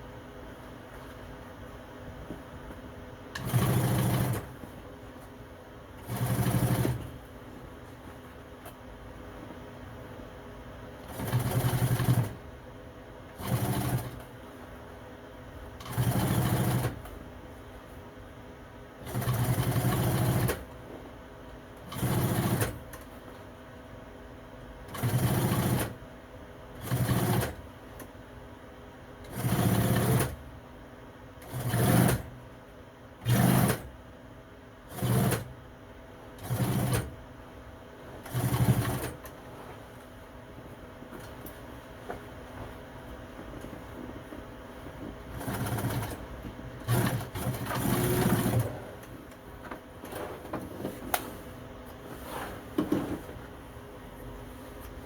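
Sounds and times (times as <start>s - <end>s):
sewing machine stitching: 3.4s - 4.6s, 6.0s - 7.1s, 11.0s - 12.4s, 13.4s - 14.3s, 15.8s - 17.1s, 19.0s - 20.7s, 21.8s - 22.9s, 24.9s - 26.0s, 26.8s - 27.6s, 29.2s - 30.4s, 31.4s - 32.3s, 33.2s - 33.9s, 34.9s - 35.5s, 36.4s - 37.2s, 38.2s - 39.3s, 45.3s - 49.1s.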